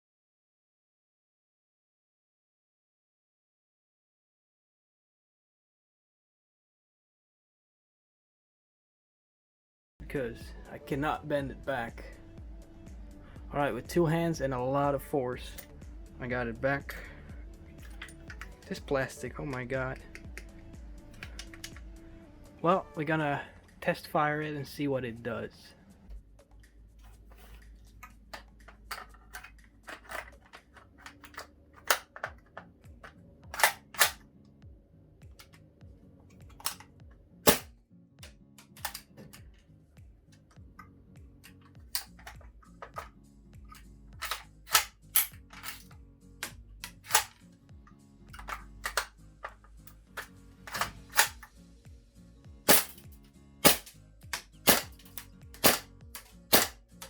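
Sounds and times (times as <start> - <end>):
airsoft rifle shots cracking: 37.4 - 37.7, 52.7 - 53.0, 53.6 - 53.9, 54.6 - 55.0, 55.6 - 55.9, 56.5 - 56.8.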